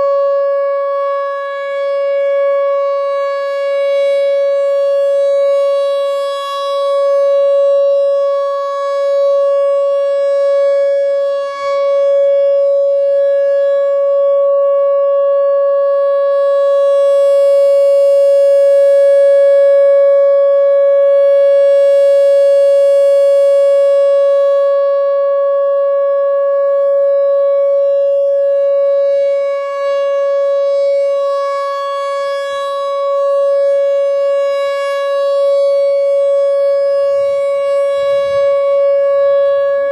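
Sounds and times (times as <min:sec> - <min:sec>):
warning siren steady tone: 0:00.0 - 0:39.9.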